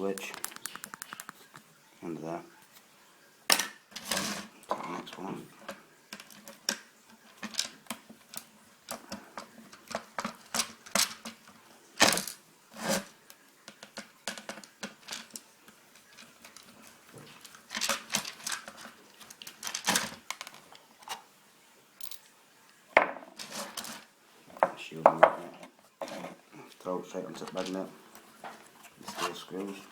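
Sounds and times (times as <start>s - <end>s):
plastic parts clicking and knocking: 0.0s - 1.6s, 13.7s - 15.4s.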